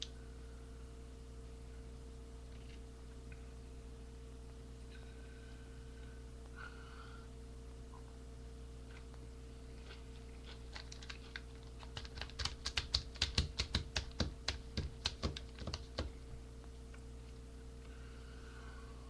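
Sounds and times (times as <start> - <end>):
steady low hum: 0.0 - 19.0
computer keyboard typing: 10.8 - 16.1.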